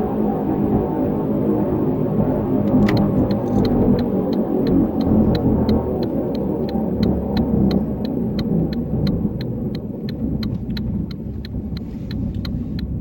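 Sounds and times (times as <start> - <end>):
car driving with droning rumble: 0.1 - 13.0
sharp regular ticking: 2.7 - 13.0.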